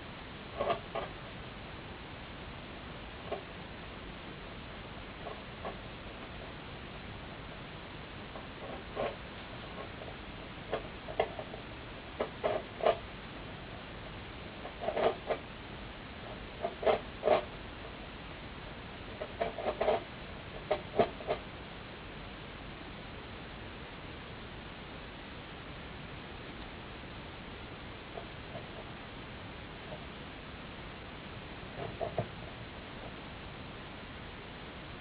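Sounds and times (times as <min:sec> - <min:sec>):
knocking and scraping on wood: 0:19.2 - 0:20.0, 0:20.6 - 0:21.4, 0:31.8 - 0:32.4.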